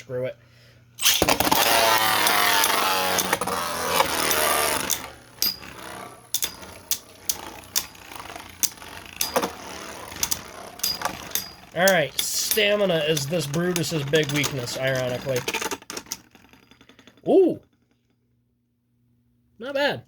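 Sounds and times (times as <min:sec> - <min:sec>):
spinning tops clicking together: 0:01.0 - 0:17.2
spinning tops whirring: 0:01.0 - 0:17.9.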